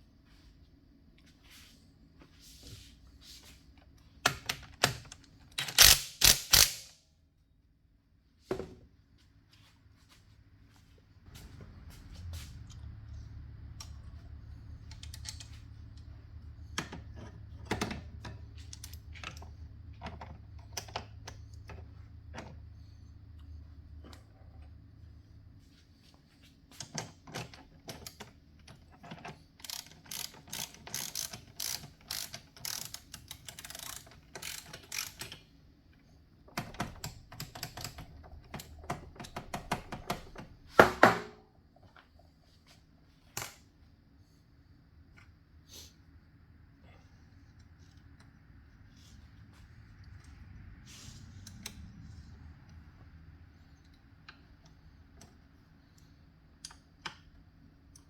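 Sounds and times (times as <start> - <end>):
ratchet wrench clicking: 5.6 - 7.0, 29.6 - 35.4.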